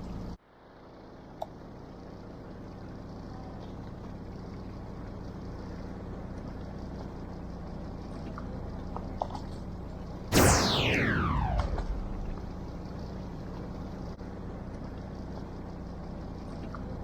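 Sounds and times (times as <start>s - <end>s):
faint small clicks: 1.4s - 1.6s.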